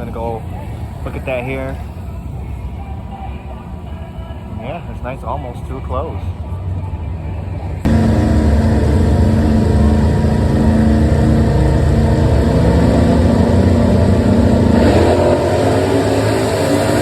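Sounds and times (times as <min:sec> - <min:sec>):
car engine revving: 0:07.8 - 0:17.0.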